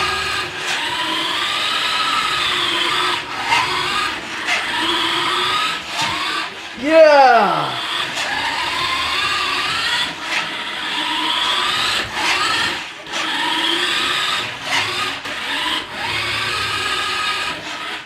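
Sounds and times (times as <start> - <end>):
rc car electric motor whining: 8.3 - 17.9.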